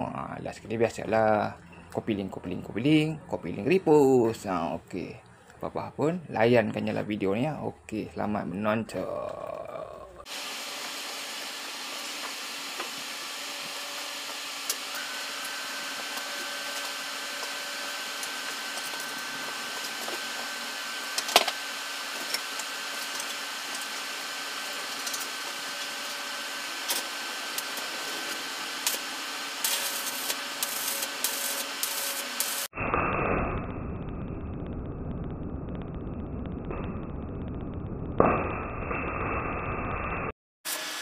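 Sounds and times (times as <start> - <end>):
arc welding sizzling hiss: 10.2 - 32.7, 40.7 - 41.0
sharp welding crackles: 10.3 - 41.0.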